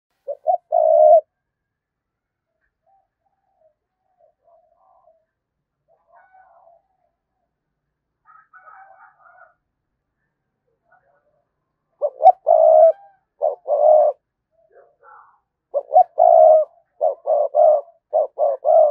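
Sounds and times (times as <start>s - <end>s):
dove cooing: 0.2s - 1.3s, 2.8s - 5.3s, 12.0s - 14.2s, 15.7s - 18.9s.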